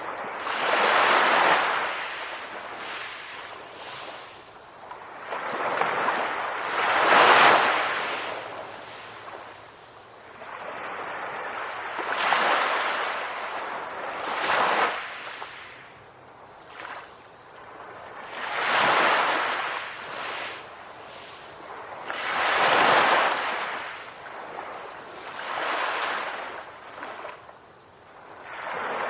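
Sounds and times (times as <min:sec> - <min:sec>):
ocean waves breaking on shore: 0:00.0 - 0:29.0.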